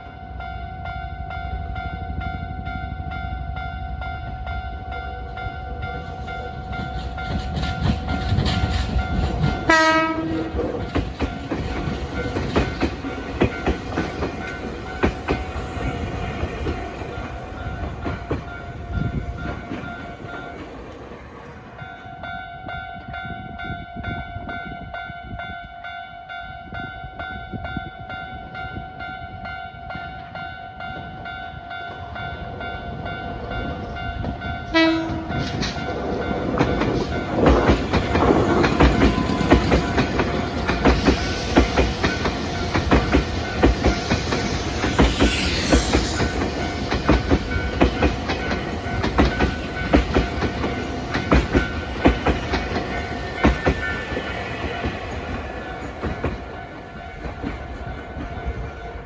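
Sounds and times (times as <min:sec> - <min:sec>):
train wheels clattering over rail joints: 0:06.6 - 0:21.3, 0:35.1 - 0:58.5
train horn blast: 0:09.6 - 0:10.8, 0:34.6 - 0:35.6.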